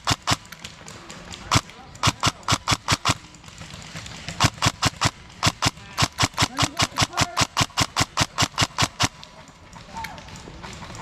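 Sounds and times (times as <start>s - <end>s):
airsoft rifle firing single shots: 0.0s - 0.5s, 1.4s - 3.2s, 4.4s - 9.2s.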